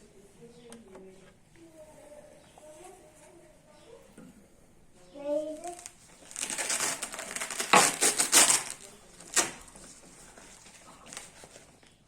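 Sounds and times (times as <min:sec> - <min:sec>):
hook-and-loop fastener tearing open: 0:05.7 - 0:09.8.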